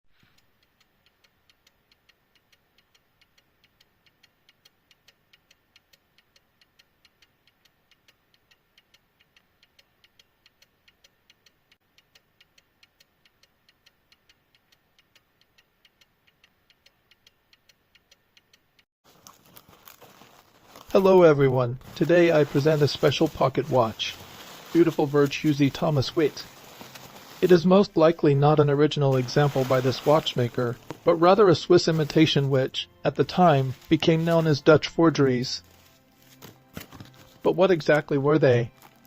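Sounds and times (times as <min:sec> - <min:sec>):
pocket watch ticking: 0:00.2 - 0:29.2.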